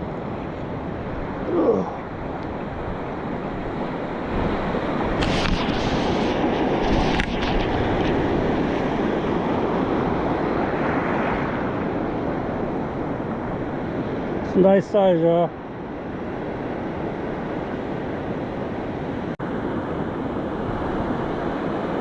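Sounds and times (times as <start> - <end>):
wind buffeting microphone: 0.0 - 14.8
ocean surf washing up beach: 0.0 - 22.0.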